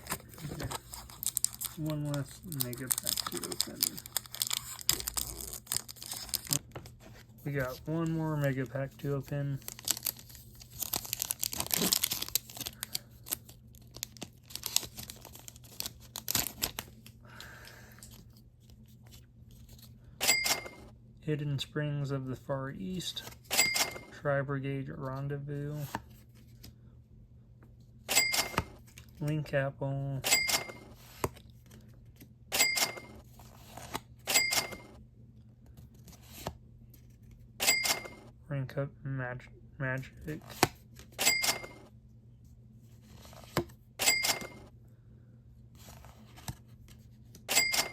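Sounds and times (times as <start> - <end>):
wrapper tearing and crinkling: 0.0 - 6.6, 9.6 - 16.9.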